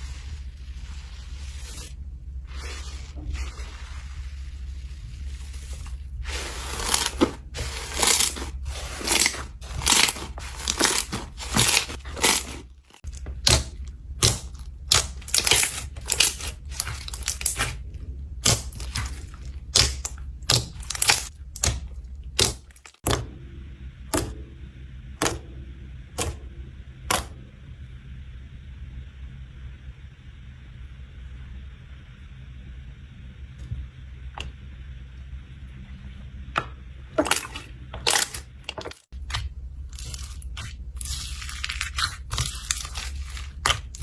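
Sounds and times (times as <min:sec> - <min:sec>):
slime squishing and popping: 0:06.8 - 0:17.8, 0:18.4 - 0:23.2.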